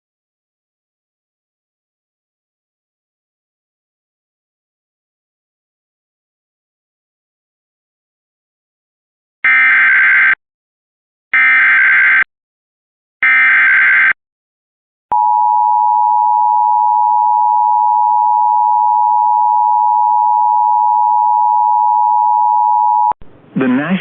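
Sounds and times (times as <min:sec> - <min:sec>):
steady attention tone: 0:15.1 - 0:24.0.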